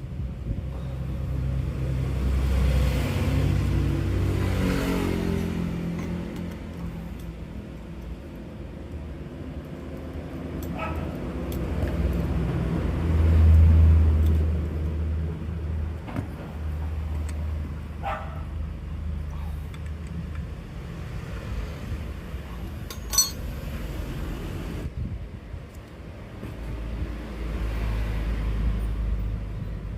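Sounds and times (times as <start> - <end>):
dog barking: 10.7 - 11.2, 18.0 - 18.5.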